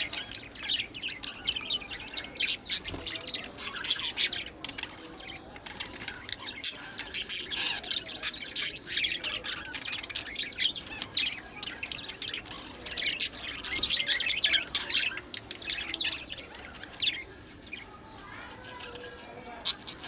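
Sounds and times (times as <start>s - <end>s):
birds chirping and squawking: 0.0s - 20.0s.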